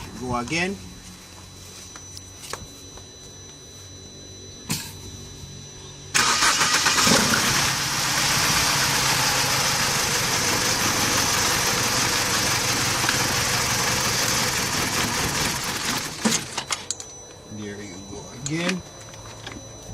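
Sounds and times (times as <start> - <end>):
car engine starting: 6.2 - 16.6
misfiring engine idling: 6.2 - 16.6.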